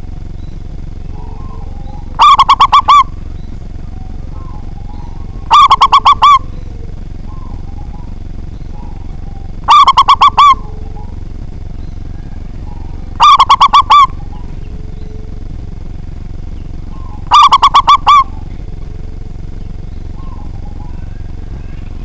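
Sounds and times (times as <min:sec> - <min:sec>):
dove cooing: 0:00.0 - 0:22.0.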